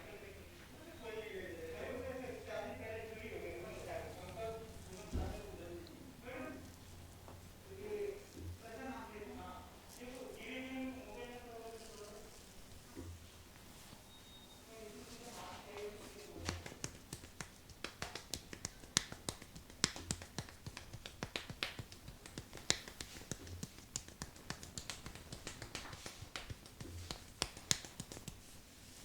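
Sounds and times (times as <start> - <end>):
fingers snapping: 16.4 - 28.5.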